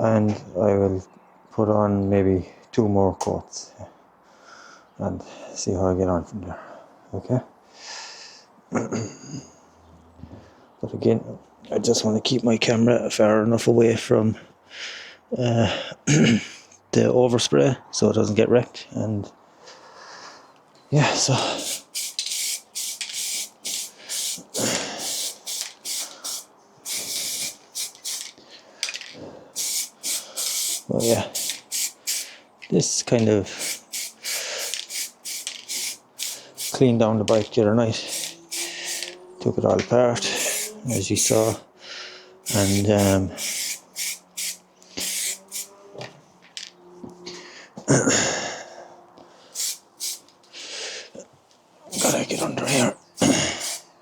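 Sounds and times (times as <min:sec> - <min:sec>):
aerosol spray can hissing: 0:21.6 - 0:28.4, 0:29.6 - 0:32.4, 0:33.6 - 0:36.8, 0:38.1 - 0:39.2, 0:40.2 - 0:41.6, 0:42.4 - 0:45.7, 0:49.6 - 0:50.3, 0:51.9 - 0:53.9.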